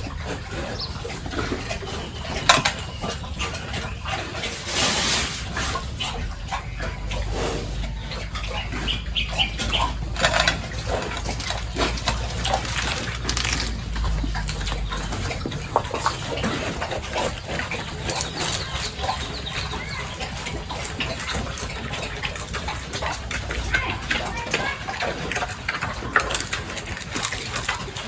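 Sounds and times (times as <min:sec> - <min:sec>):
irregular clicks and knocks: 0:09.5 - 0:16.7.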